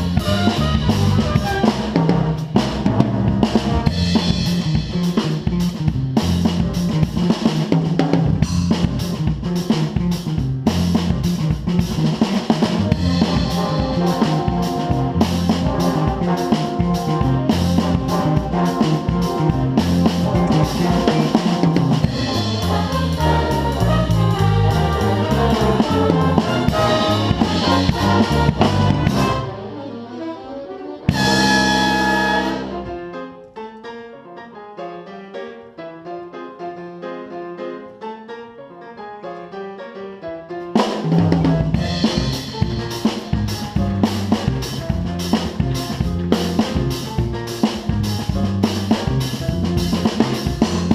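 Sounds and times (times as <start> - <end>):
brass section: 0.0 - 4.9, 12.4 - 33.3
snare drum: 0.0 - 10.0, 10.8 - 29.5, 31.1 - 32.8, 40.8 - 50.9
big band playing jazz: 0.0 - 33.3, 40.7 - 50.9.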